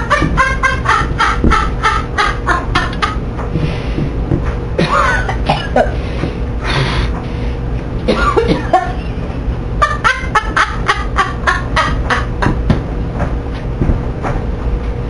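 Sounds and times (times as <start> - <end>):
microwave oven humming: 0.0 - 15.0.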